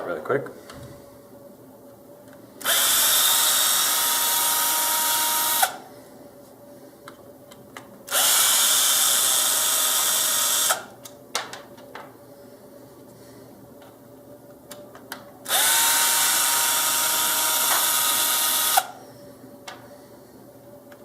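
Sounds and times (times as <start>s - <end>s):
electric screwdriver running: 2.6s - 5.8s, 8.1s - 10.9s, 15.5s - 18.9s.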